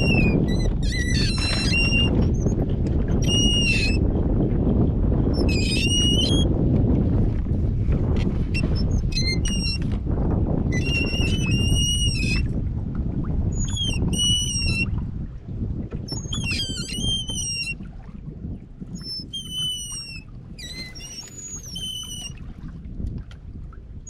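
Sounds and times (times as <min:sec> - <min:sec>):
high squeaky whistle-like call: 0:00.0 - 0:02.1, 0:03.2 - 0:04.0, 0:09.1 - 0:09.8, 0:13.6 - 0:14.9, 0:16.2 - 0:17.8, 0:19.0 - 0:22.4
water noise: 0:00.0 - 0:24.0
wind: 0:00.0 - 0:24.0.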